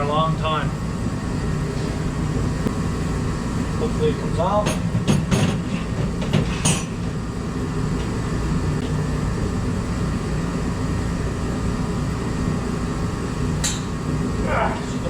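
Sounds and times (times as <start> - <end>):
low mechanical rumble: 0.0 - 15.0.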